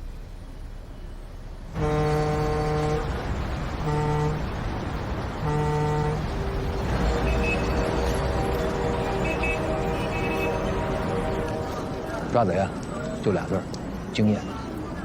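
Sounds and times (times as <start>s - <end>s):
vehicle horn honking: 1.8s - 4.6s, 5.4s - 12.2s
steady horn-like tone: 1.8s - 12.4s.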